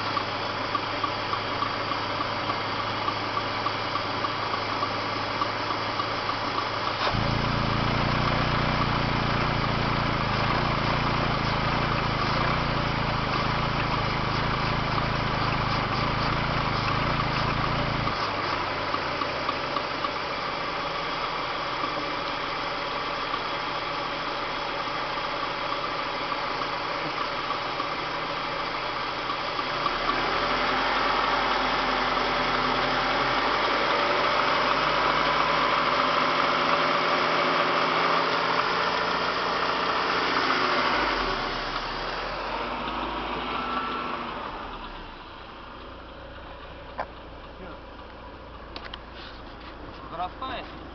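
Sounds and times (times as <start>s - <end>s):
car engine running: 0.0s - 50.9s
sharp engine tapping: 0.1s - 20.6s.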